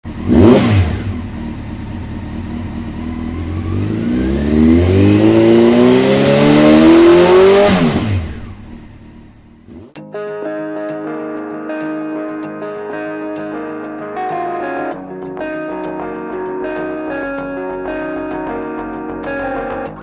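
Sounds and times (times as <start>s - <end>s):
car engine passing by: 3.1s - 9.9s.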